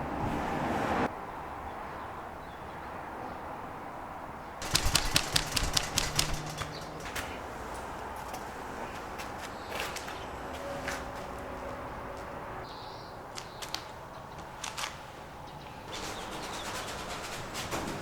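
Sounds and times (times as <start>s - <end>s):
sharp clicks and crackles: 4.6s - 7.4s.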